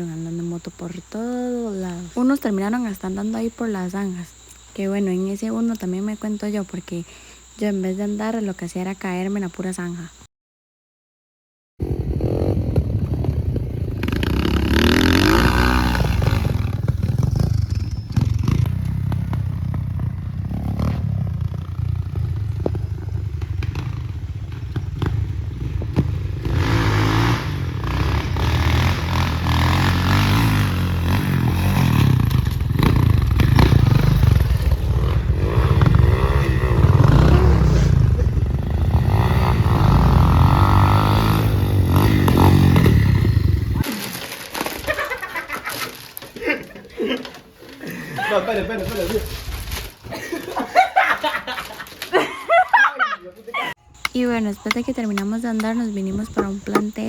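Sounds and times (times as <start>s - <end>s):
motorcycle engine revving: 11.8s - 43.9s, 53.9s - 57.0s.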